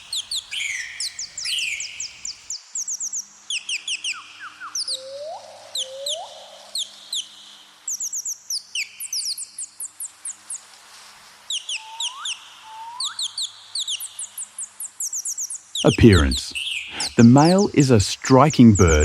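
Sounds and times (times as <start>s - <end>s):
birds chirping: 0.0s - 2.5s, 15.1s - 19.0s.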